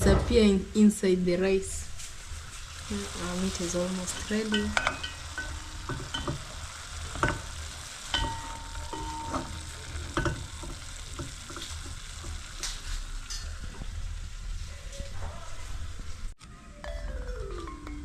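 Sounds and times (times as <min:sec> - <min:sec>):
meat sizzling in a pot: 0:01.4 - 0:16.3
spoon knocking against pot: 0:04.5 - 0:12.4.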